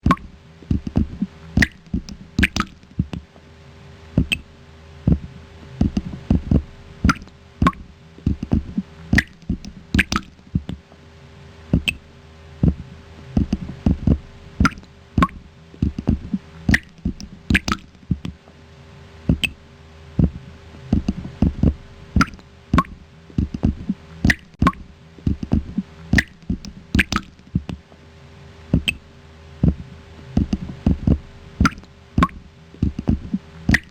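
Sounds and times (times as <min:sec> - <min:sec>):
faint steady hum: 0:00.0 - 0:33.9
person imitating water drops: 0:01.6 - 0:03.2, 0:09.2 - 0:10.3, 0:16.7 - 0:17.9, 0:26.2 - 0:27.8.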